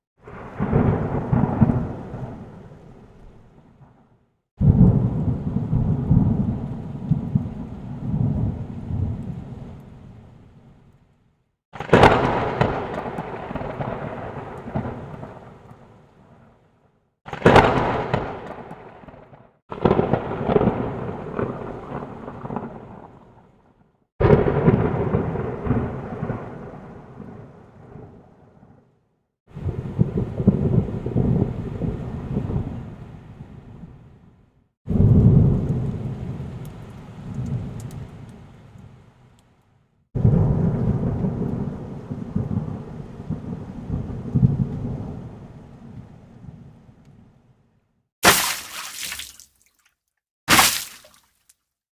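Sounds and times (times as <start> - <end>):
thunder rumbling: 0.2 - 4.0, 4.6 - 10.1, 11.8 - 15.7, 17.3 - 28.8, 29.5 - 34.0, 34.9 - 38.2, 40.2 - 45.4.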